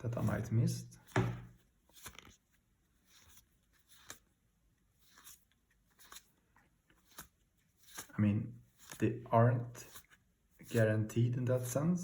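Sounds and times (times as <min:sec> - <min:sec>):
cards flicking and sliding: 0:01.0 - 0:09.1.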